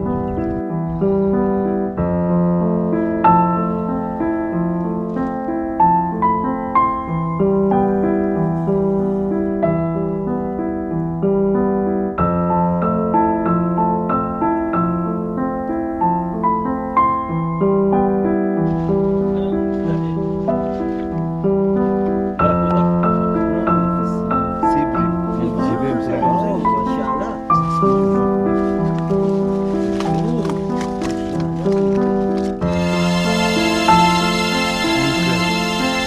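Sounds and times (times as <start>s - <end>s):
piano playing flowing notes: 0.0s - 36.0s.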